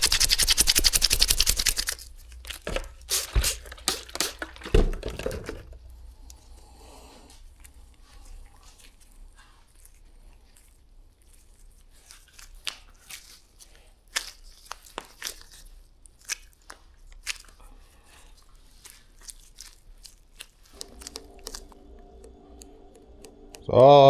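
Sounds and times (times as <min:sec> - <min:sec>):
faint steady hum: 0:20.8 - 0:24.0.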